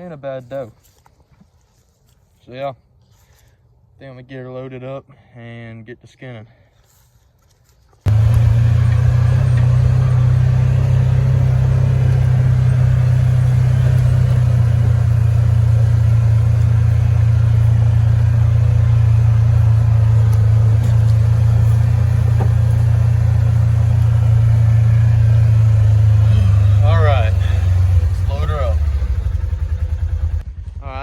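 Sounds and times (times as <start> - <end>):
vehicle engine drone: 8.1 - 31.0.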